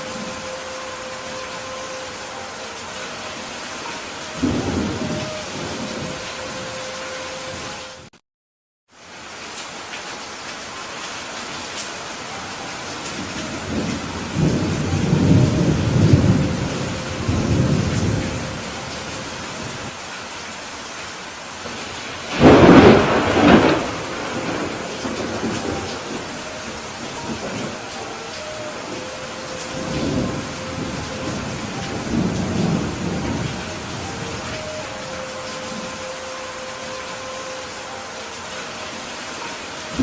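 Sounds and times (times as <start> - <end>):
heavy rain falling: 0.0 - 8.2, 8.9 - 40.0
thunder rumbling: 4.3 - 6.7, 13.2 - 19.9, 21.7 - 36.1.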